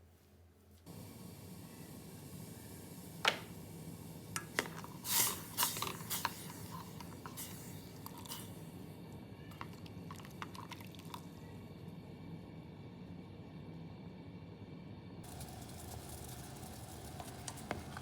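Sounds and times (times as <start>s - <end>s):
steady low hum: 0.4s - 18.0s.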